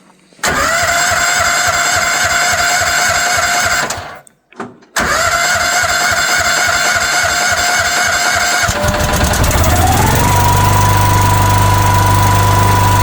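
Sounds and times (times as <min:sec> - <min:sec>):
small gasoline engine running: 0:00.4 - 0:04.2, 0:05.1 - 0:13.0.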